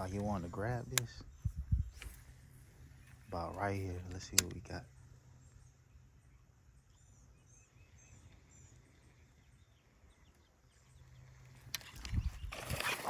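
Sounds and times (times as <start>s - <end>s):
sharp click: 3.5s - 4.6s
faint high bird chirps: 4.7s - 13.0s.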